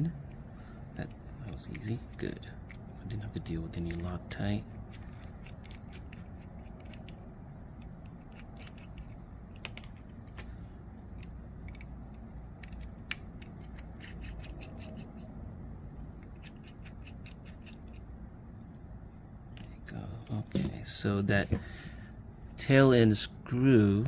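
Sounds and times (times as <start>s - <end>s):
screwdriver clicking and scratching: 3.6s - 15.4s, 16.0s - 19.7s.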